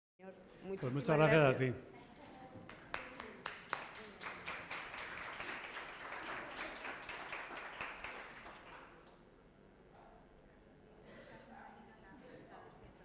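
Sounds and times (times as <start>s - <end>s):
audience applauding: 2.6s - 9.1s.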